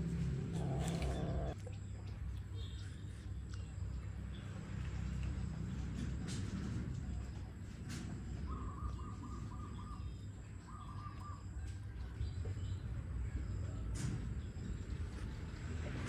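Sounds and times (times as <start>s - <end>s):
low steady rumble: 0.0s - 7.3s
animal rattling trills: 0.2s - 1.6s.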